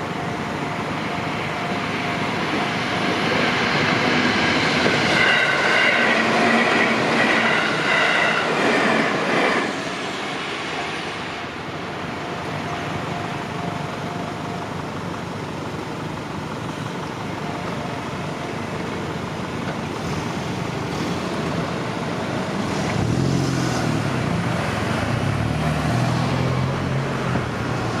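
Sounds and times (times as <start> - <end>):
train rolling past: 0.0 - 28.0
high ringing tones: 10.6 - 14.9.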